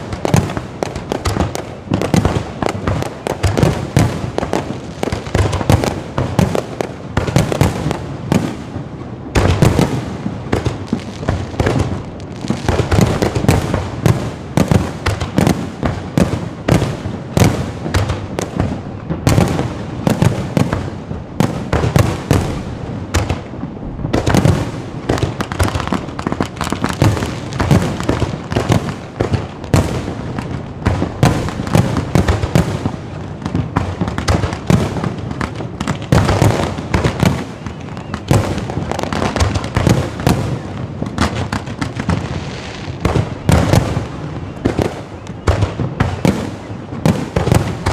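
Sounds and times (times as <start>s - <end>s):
fireworks bangs: 0.0s - 47.9s.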